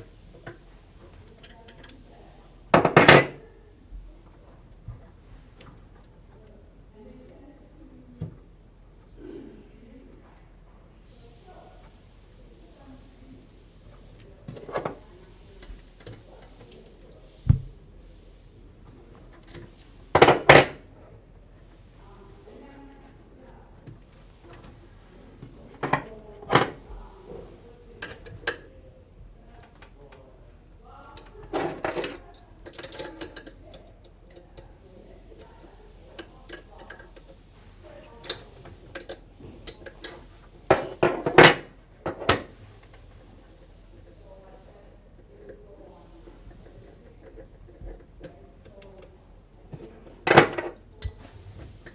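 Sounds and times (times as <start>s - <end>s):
plumbing tools clicking and clinking: 0.0s - 3.5s, 13.8s - 18.0s, 18.6s - 21.9s, 23.0s - 51.9s
knock under sink: 17.5s - 17.7s.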